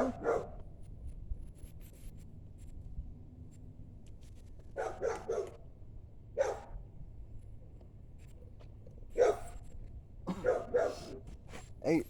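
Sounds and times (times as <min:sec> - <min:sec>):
dog barking: 0:00.0 - 0:00.6, 0:04.8 - 0:05.6, 0:06.4 - 0:06.8, 0:09.2 - 0:09.5, 0:10.3 - 0:11.2.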